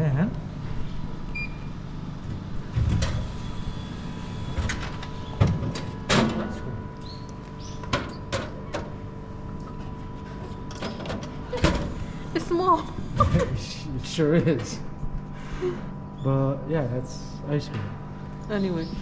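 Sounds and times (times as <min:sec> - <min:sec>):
vending machine clunks and clicks: 0:04.6 - 0:06.7.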